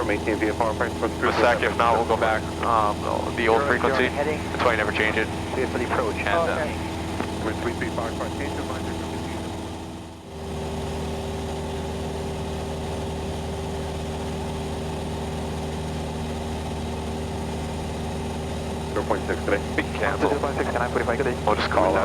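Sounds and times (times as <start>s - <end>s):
aircraft engine and propeller droning: 0.0s - 22.0s.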